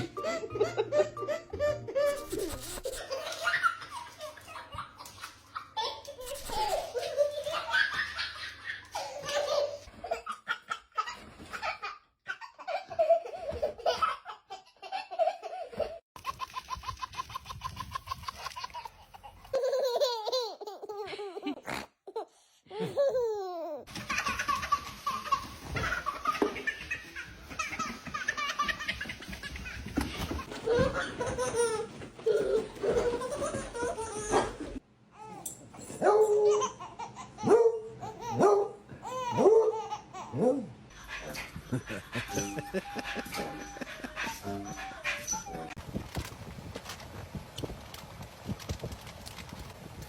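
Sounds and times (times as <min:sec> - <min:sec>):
young child giggling: 0:00.0 - 0:03.8, 0:06.2 - 0:09.5, 0:41.2 - 0:45.7
child laughing: 0:00.0 - 0:22.2, 0:41.1 - 0:45.8.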